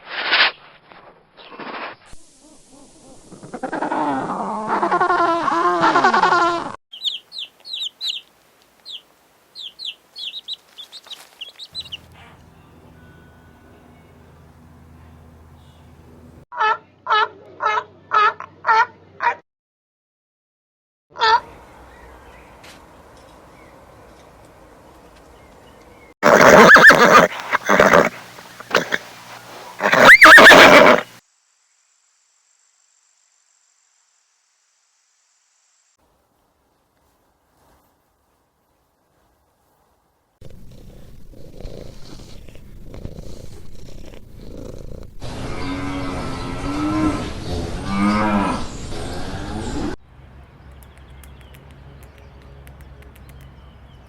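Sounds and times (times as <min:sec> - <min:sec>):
chicks peeping: 0:06.9 - 0:09.0, 0:09.6 - 0:12.4
faint low hum: 0:11.8 - 0:16.4
horse whinnying: 0:26.2 - 0:29.1, 0:29.7 - 0:31.1
deeper animal call: 0:26.2 - 0:31.1, 0:45.2 - 0:50.0.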